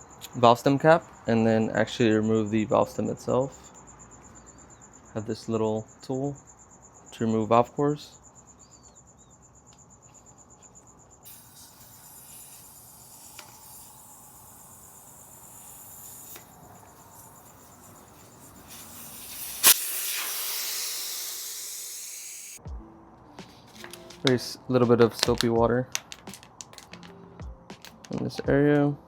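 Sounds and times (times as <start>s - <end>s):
air hissing out of tire: 11.2s - 22.6s
sharp click: 18.7s - 20.4s.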